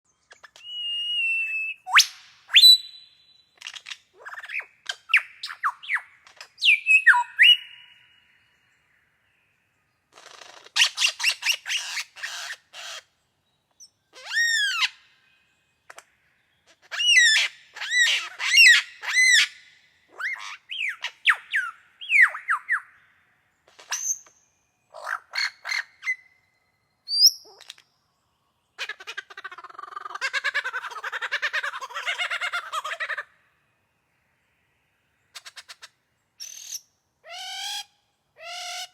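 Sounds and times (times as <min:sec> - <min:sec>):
bird calling: 0:00.3 - 0:08.3.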